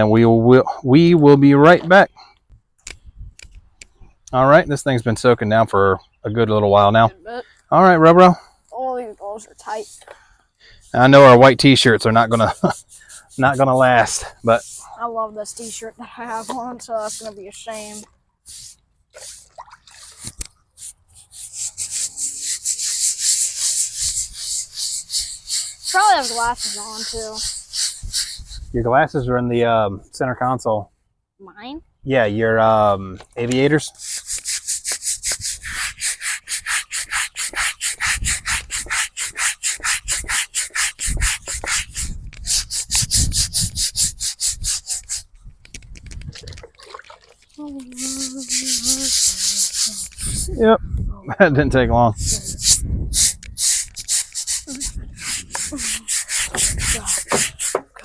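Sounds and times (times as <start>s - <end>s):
brush scrubbing stone: 9.2s - 10.1s, 10.8s - 28.7s, 33.9s - 45.3s, 47.5s - 50.7s, 52.2s - 58.0s.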